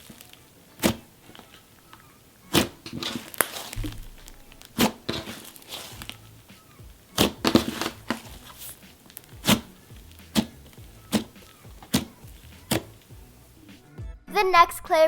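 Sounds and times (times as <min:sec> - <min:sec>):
slime squished by hand: 0:00.0 - 0:13.4.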